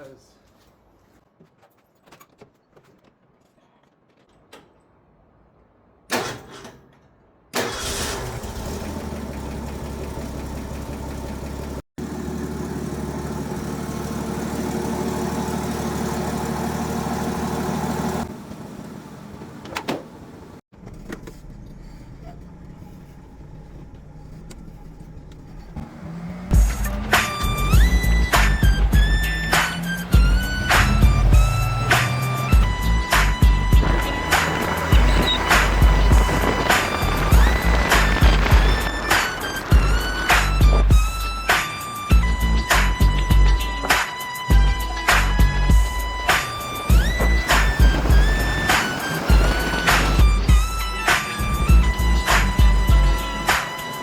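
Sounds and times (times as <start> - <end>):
pickup engine starting and running: 7.5 - 54.0.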